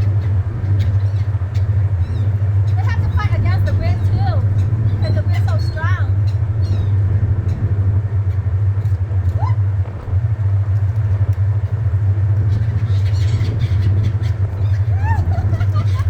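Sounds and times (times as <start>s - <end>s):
seagull call: 0.0s - 7.8s, 9.2s - 9.7s, 12.4s - 16.0s
low engine drone: 0.0s - 16.0s
wind buffeting microphone: 0.0s - 16.0s.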